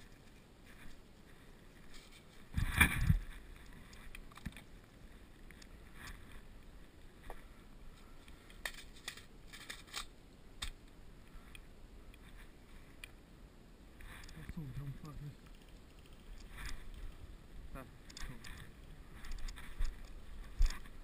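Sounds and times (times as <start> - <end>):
sharp clicks and snaps: 15.4 - 17.0, 18.0 - 20.8.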